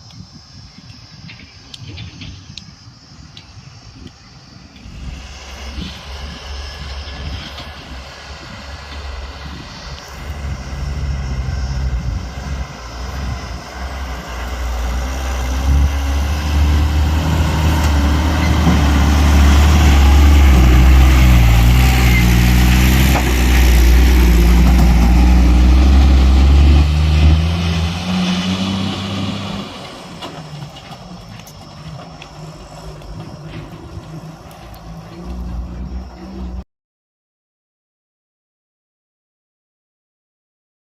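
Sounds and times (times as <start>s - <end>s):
heavy diesel engine working: 4.3s - 36.6s.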